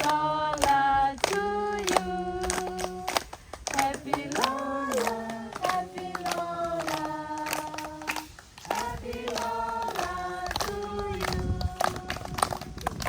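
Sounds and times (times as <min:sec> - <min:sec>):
group singing long notes: 0:00.0 - 0:13.0.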